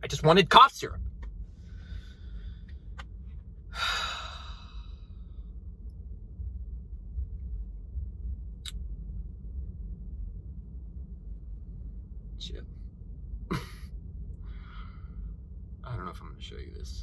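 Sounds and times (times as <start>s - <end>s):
steady low hum: 0.0s - 17.0s
man sighing: 3.8s - 4.8s, 13.5s - 13.9s.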